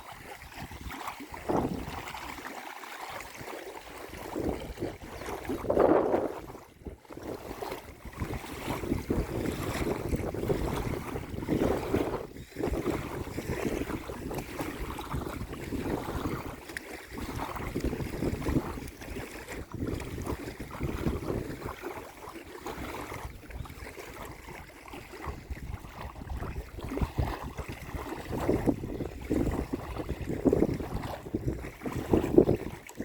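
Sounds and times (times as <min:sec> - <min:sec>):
wind rumbling on microphone: 0:00.0 - 0:02.4, 0:03.1 - 0:33.0
small waves lapping and splashing: 0:00.0 - 0:33.0.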